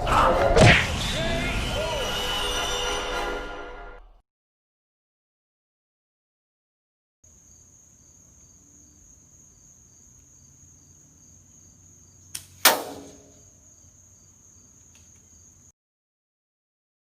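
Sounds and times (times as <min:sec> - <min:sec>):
insects chirping: 0:07.2 - 0:15.7
loud sharp crack: 0:12.3 - 0:13.5.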